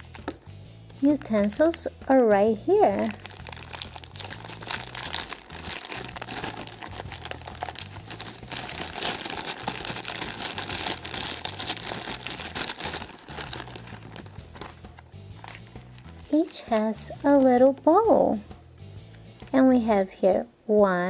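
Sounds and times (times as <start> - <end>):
plastic packaging crinkling: 2.9 - 17.9.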